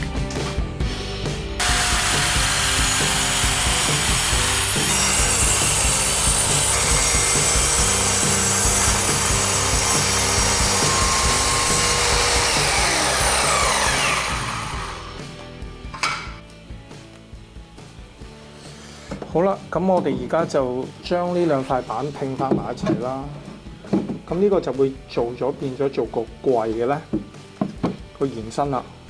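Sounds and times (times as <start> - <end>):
power saw cutting wood: 1.6 - 15.5.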